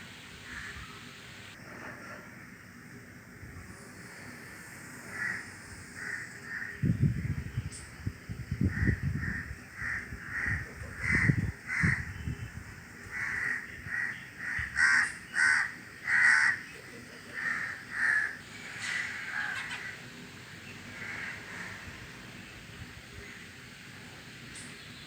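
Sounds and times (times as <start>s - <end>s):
crows cawing: 0.4s - 1.0s, 5.1s - 6.8s, 8.6s - 12.1s, 13.0s - 20.0s, 20.9s - 22.1s
wind buffeting microphone: 5.1s - 14.8s.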